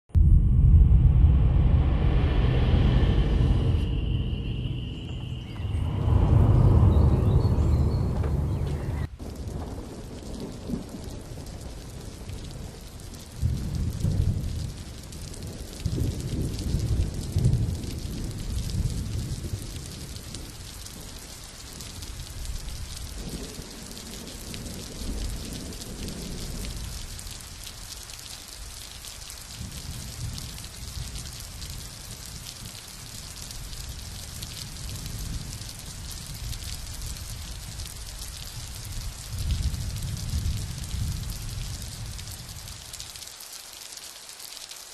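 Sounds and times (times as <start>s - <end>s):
low rumbles: 0.1s - 9.6s
heavy rain falling: 2.3s - 44.9s.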